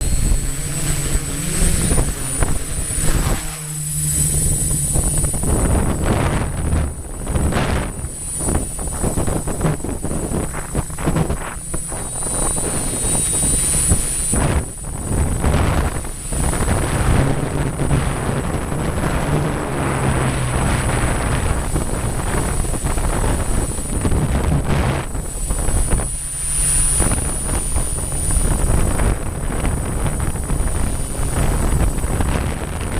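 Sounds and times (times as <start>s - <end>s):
high-pitched whine: 0.0s - 32.9s
multicopter propellers whirring: 0.0s - 32.9s
wind gusting over microphone: 0.0s - 32.9s.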